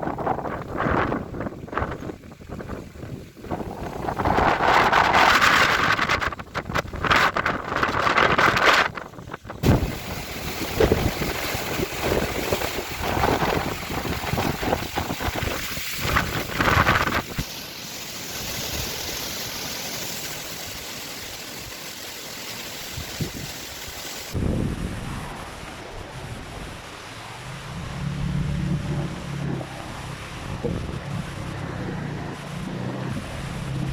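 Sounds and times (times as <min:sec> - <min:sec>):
gusty wind buffeting microphone: 0:00.0 - 0:17.5, 0:24.3 - 0:33.9
surf rushing: 0:00.0 - 0:33.9.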